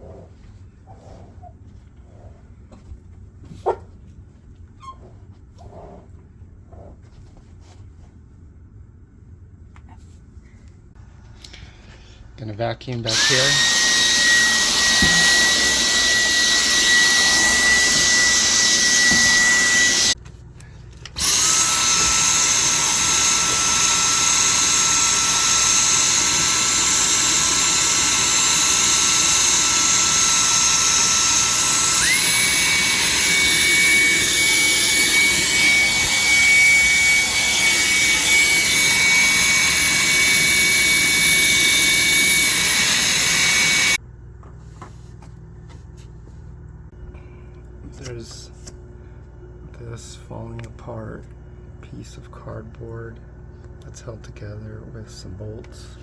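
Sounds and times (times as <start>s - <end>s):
vacuum cleaner motor whine: 12.9s - 20.2s, 21.1s - 44.0s.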